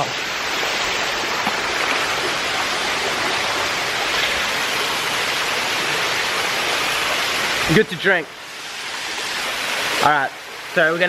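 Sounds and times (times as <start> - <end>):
stream water rushing: 0.0 - 11.0.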